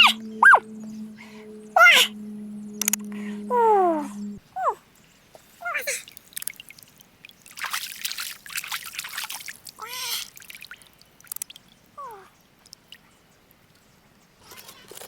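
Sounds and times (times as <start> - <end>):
animal calls falling in pitch: 0.0 - 4.4
water splashing and trickling: 5.5 - 13.8.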